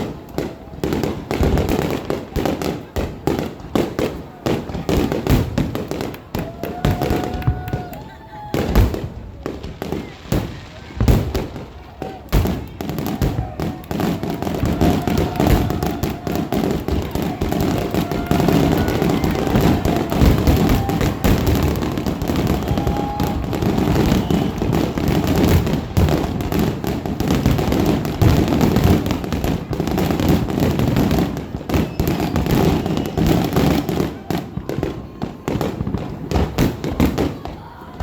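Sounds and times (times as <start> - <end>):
fireworks bangs and crackles: 0.0 - 38.0.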